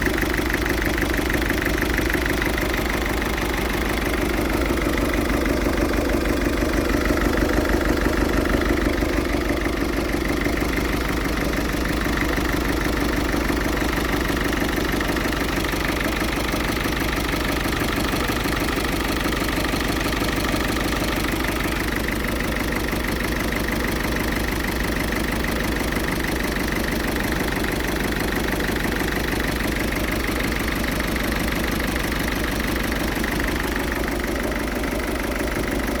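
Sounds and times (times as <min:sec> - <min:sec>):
diesel engine idling: 0:00.0 - 0:36.0.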